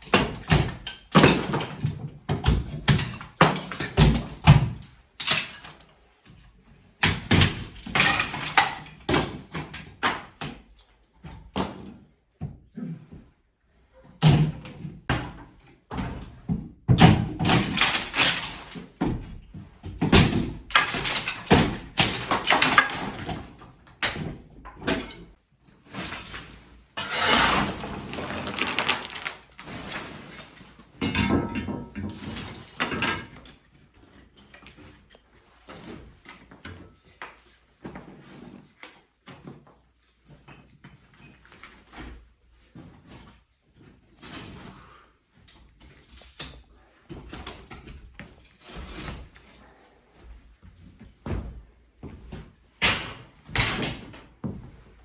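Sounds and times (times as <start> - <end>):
crowbar scraping plaster: 27.0 - 30.6
falling debris crashing: 27.2 - 30.5.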